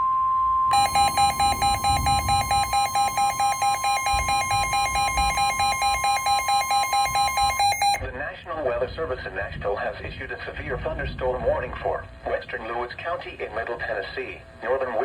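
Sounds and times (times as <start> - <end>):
rapid pulsing alarm beeps: 0.7 - 8.0
steady alert tone: 0.7 - 8.0.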